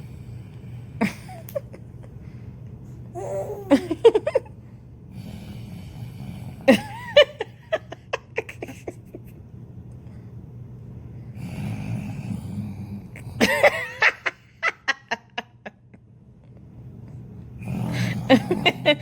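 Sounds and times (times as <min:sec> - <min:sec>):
steady low hum: 0:00.0 - 0:19.0
person laughing: 0:03.2 - 0:04.5, 0:06.7 - 0:09.4.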